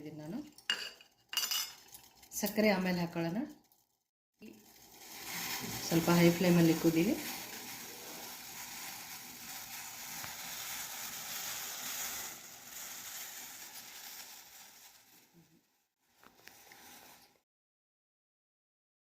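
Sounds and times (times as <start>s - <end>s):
pan of tea hissing on stove: 4.4s - 15.3s, 16.3s - 17.4s.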